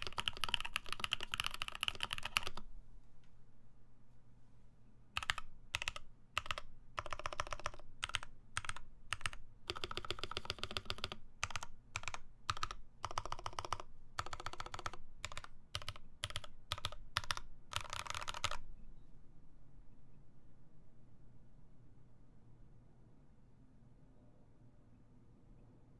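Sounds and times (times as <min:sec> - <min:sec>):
typing on mechanical keyboard: 0:00.0 - 0:02.6, 0:05.2 - 0:18.6.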